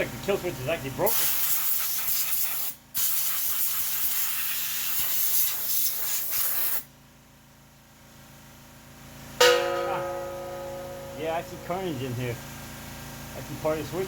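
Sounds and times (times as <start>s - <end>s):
loud hissing spray: 1.1s - 6.8s.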